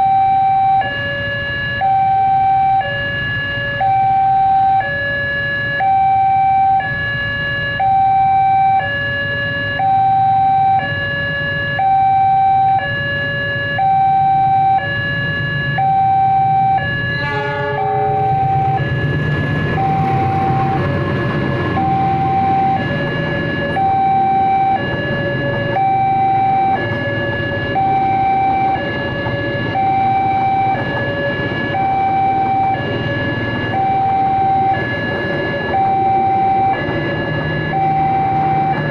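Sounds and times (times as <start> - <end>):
two-tone level crossing alarm: 0.0 - 38.9
broad rumbling noise: 17.7 - 38.9.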